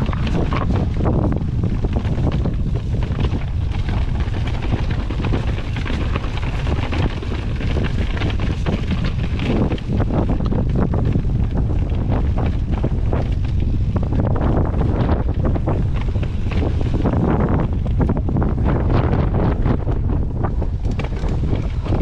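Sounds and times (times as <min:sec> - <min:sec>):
bike clattering over rough ground: 0:00.0 - 0:22.0
wind buffeting microphone: 0:00.0 - 0:22.0.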